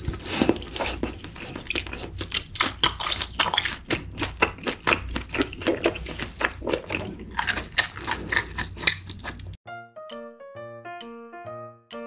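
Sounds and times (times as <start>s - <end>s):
person chewing food: 0.0s - 9.6s.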